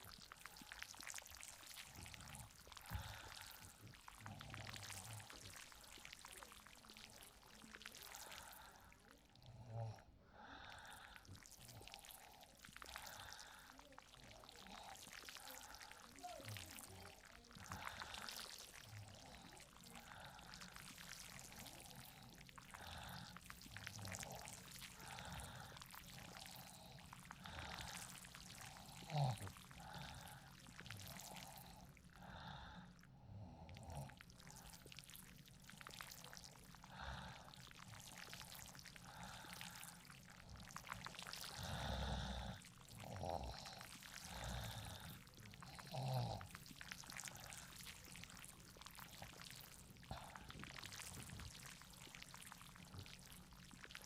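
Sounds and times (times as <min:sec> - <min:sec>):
rain patter: 0:00.0 - 0:09.4, 0:10.6 - 0:32.8, 0:33.8 - 0:54.0.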